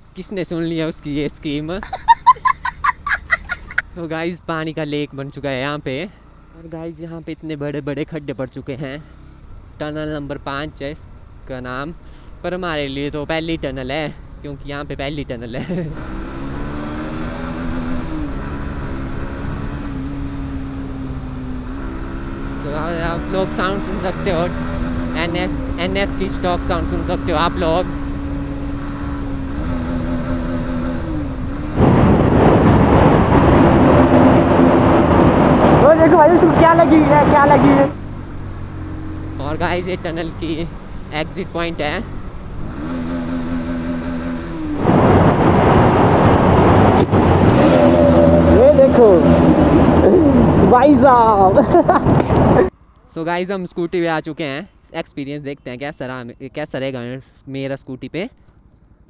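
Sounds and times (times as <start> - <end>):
motorcycle engine cruising in tunnel: 8.5 - 53.0
loud rushing noise: 31.8 - 38.0, 44.8 - 50.7.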